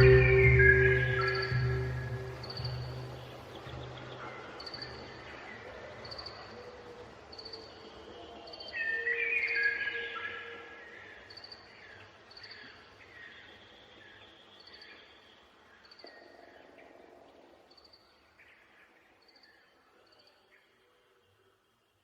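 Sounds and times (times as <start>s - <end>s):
short high chirps: 0.0s - 3.8s.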